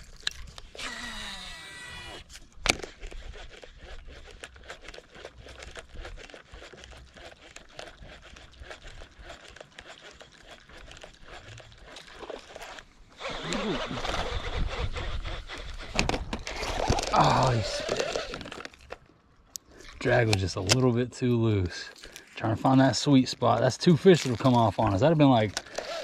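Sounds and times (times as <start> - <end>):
fishing reel clicking: 0.0 - 4.9, 10.2 - 18.7, 25.5 - 26.0.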